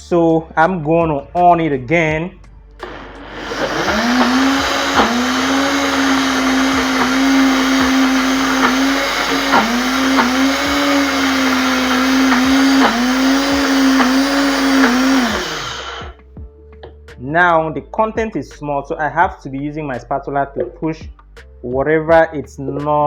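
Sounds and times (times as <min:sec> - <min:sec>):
blender motor grinding peanuts: 0:02.8 - 0:16.2.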